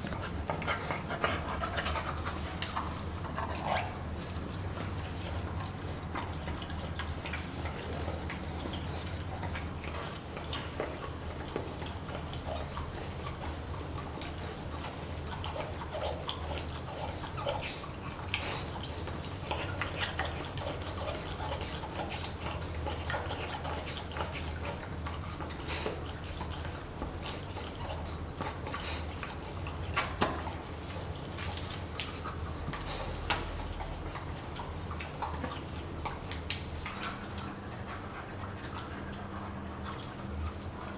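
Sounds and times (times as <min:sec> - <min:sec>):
puppy licking and chewing toy: 0:00.0 - 0:40.9
steady low hum: 0:00.0 - 0:40.9.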